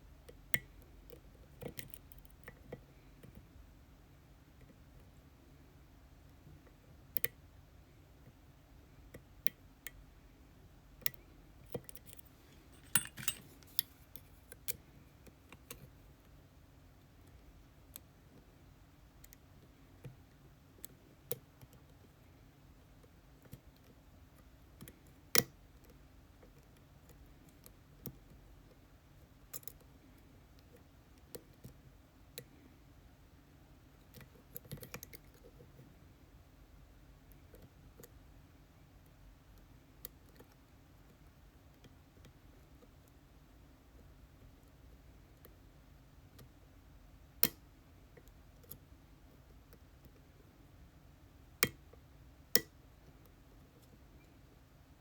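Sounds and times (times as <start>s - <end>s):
small metallic clicks from tools: 11.0s - 15.9s.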